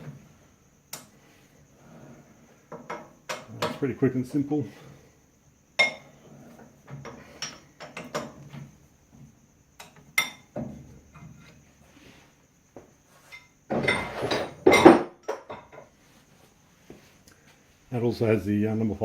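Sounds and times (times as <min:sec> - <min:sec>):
metal clinks and knocks: 0:02.6 - 0:04.0, 0:05.8 - 0:08.8, 0:13.3 - 0:16.0.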